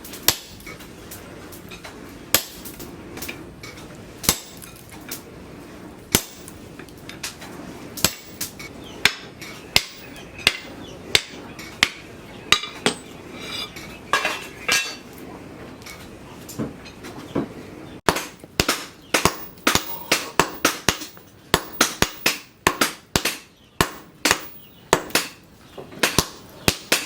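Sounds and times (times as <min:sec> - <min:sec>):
hammer striking metal: 0:06.1 - 0:06.6, 0:08.0 - 0:15.0, 0:18.1 - 0:25.4, 0:26.0 - 0:27.0
metal clinking and ringing: 0:12.5 - 0:15.0, 0:19.2 - 0:22.3.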